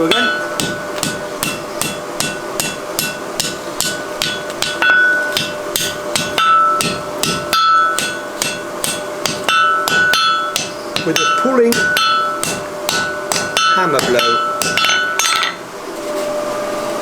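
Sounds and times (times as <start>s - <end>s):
anvil ringing: 0.0s - 15.6s
hammer striking steel on anvil: 0.0s - 15.6s.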